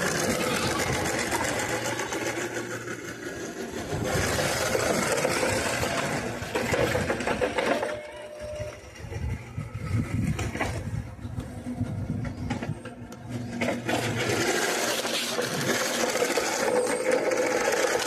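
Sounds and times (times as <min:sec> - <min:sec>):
rc car electric motor whirring: 0:00.0 - 0:07.6, 0:13.2 - 0:18.0.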